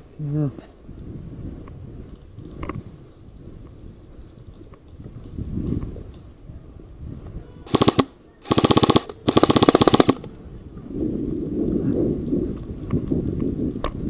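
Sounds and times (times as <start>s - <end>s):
airsoft rifle full-auto bursts: 7.7s - 10.3s.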